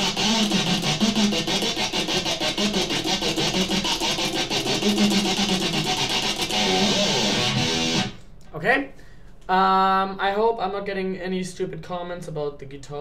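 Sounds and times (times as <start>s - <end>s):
electric guitar stuttering: 0.0s - 8.3s.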